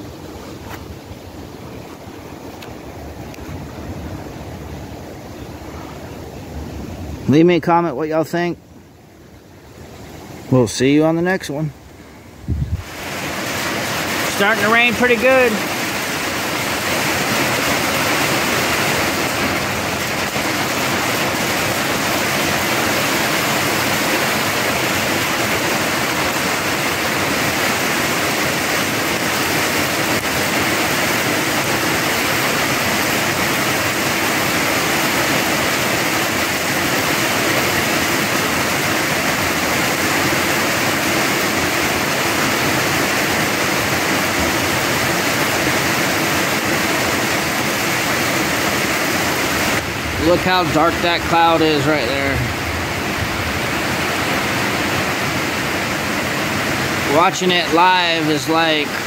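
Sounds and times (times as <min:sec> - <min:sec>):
heavy rain pouring: 0:11.3 - 0:59.0.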